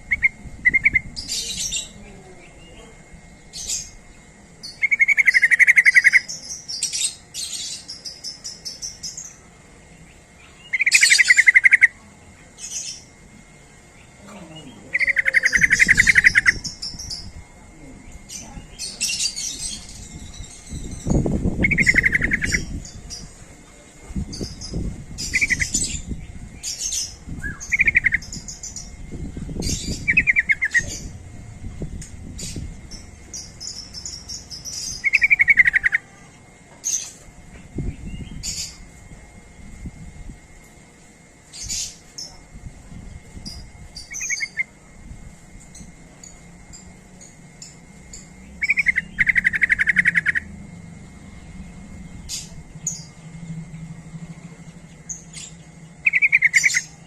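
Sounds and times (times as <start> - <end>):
bird trilled calls: 0.0 - 12.0, 13.8 - 17.4, 18.1 - 23.4, 24.2 - 38.9, 43.4 - 44.8, 45.7 - 57.0
bird high chirps: 4.6 - 9.4, 14.0 - 17.4, 18.3 - 23.3, 24.2 - 31.2, 31.8 - 36.2, 45.7 - 50.6, 51.6 - 57.0.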